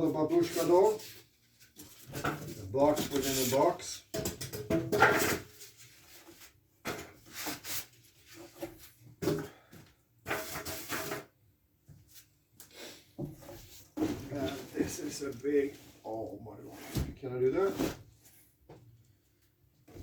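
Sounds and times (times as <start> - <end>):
cardboard boxes scraping: 1.9 - 3.7, 13.3 - 18.2.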